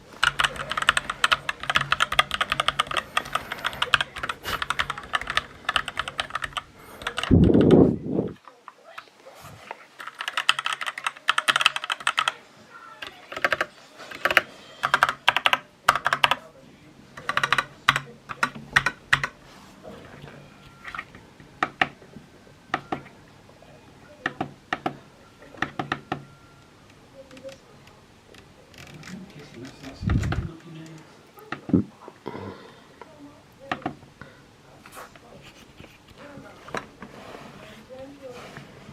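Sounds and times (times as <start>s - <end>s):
typing on mechanical keyboard: 0.2s - 7.8s, 10.0s - 12.4s, 13.0s - 16.4s, 17.2s - 19.4s.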